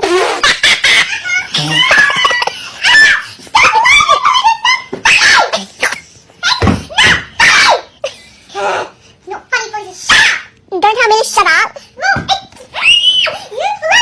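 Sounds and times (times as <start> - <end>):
person laughing and shrieking: 0.0 - 5.6.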